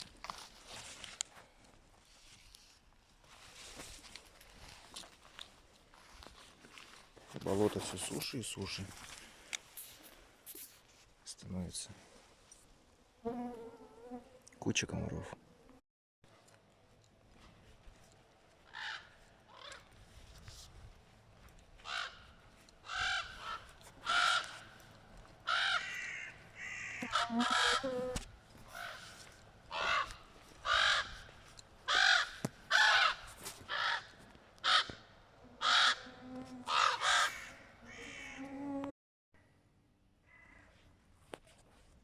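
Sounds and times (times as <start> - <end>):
crows cawing: 18.6 - 19.9, 21.8 - 27.9, 28.7 - 36.1, 36.7 - 38.4, 40.2 - 40.8.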